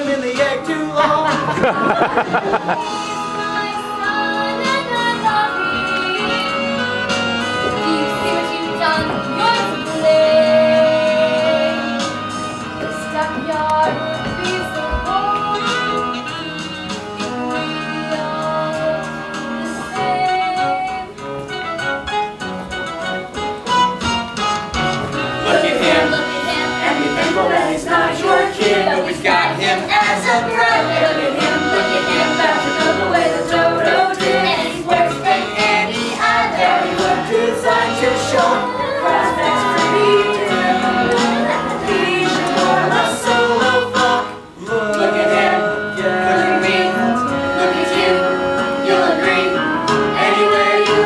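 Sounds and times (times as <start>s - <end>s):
group singing musical number: 0.0s - 20.9s, 24.8s - 51.0s
instrumental accompaniment: 0.0s - 51.0s.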